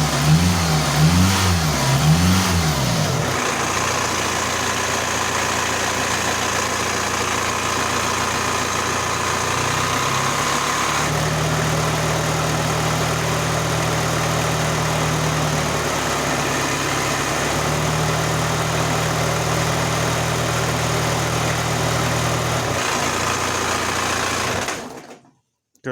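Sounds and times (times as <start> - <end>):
car engine idling: 0.0 - 24.6.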